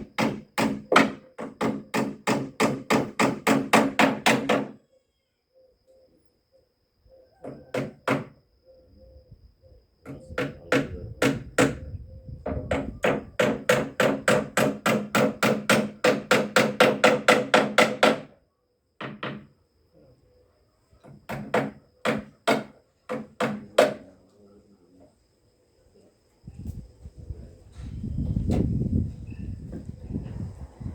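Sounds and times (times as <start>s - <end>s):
hammer striking wood: 0.1s - 4.8s, 7.4s - 8.3s, 10.1s - 11.8s, 12.5s - 18.4s, 19.0s - 19.5s, 21.0s - 24.0s.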